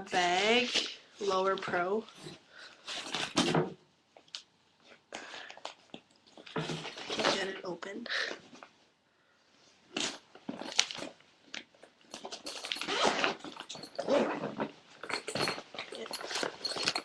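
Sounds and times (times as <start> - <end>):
bag packaging rustling: 10.0 - 17.0.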